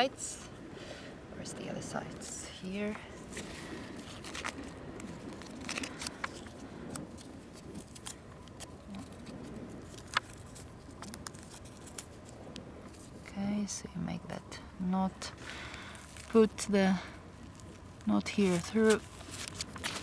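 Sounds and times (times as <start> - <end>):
kite fabric rustling and crinkling: 0.0 - 13.3, 15.2 - 20.0.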